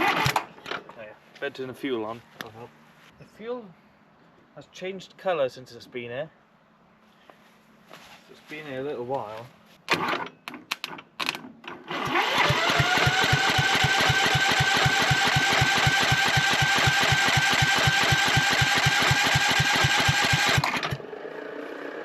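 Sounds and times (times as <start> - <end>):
electric starter cranking engine: 0.0 - 0.8, 9.9 - 11.0, 11.6 - 22.0.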